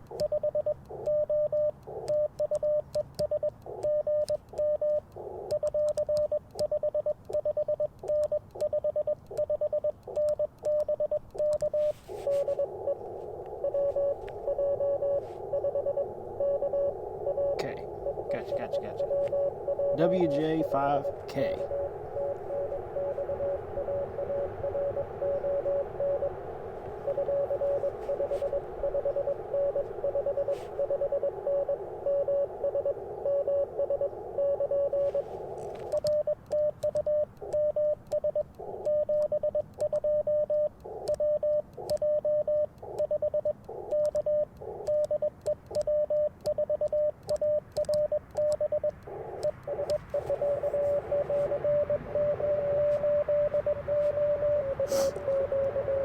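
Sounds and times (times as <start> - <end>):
morse code tone: 0.0 - 56.0
sidetone beeps in morse rhythm: 0.0 - 56.0
radio band hiss: 11.6 - 36.1, 48.9 - 56.0.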